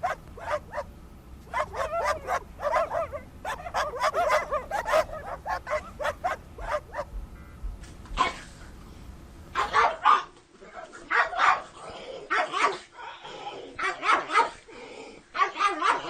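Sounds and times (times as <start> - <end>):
dog yipping: 0.0 - 0.9, 1.5 - 7.1, 9.6 - 10.3, 15.4 - 16.0.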